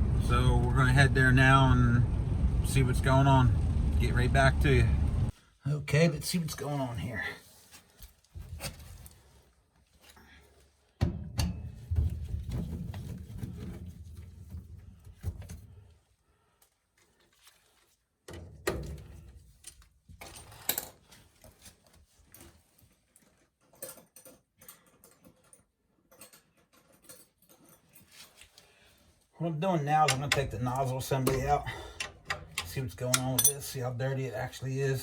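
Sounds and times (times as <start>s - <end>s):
low rumbling: 0.0s - 5.3s
metal tools clinking: 23.7s - 28.4s, 30.0s - 33.9s.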